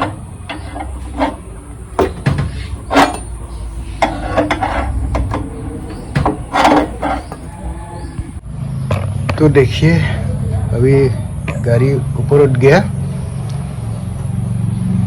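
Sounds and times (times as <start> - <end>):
car jack clanking: 0.0 - 8.4.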